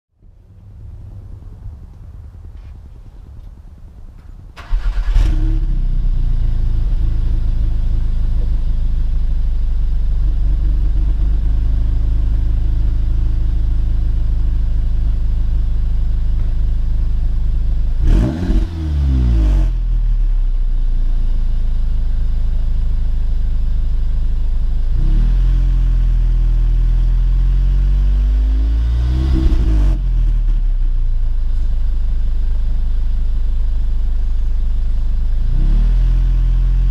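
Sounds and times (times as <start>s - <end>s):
car engine starting and revving: 4.5s - 20.4s, 24.8s - 34.3s, 34.9s - 36.9s.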